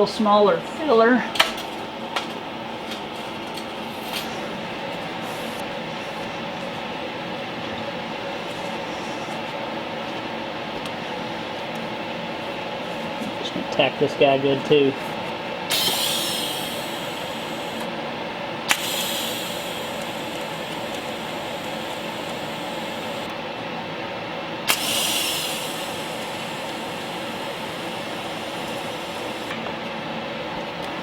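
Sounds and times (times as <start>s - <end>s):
welding arc burning: 15.7s - 23.3s, 24.6s - 29.6s
sharp crack of welding arc: 18.7s - 23.3s
steady hiss: 18.7s - 23.3s, 24.7s - 29.5s.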